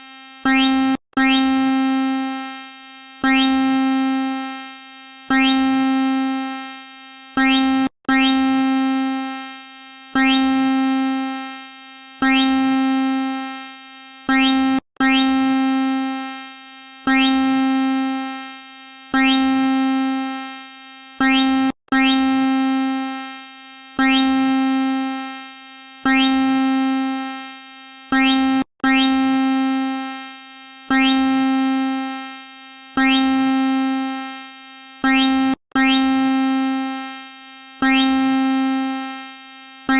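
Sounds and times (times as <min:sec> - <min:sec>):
synthesized alarm note: 0:00.5 - 0:01.7, 0:03.2 - 0:03.8, 0:05.3 - 0:06.0, 0:07.4 - 0:08.6, 0:12.3 - 0:12.8, 0:19.2 - 0:19.7, 0:30.9 - 0:31.4, 0:33.0 - 0:33.8, 0:35.0 - 0:36.5, 0:37.8 - 0:38.8.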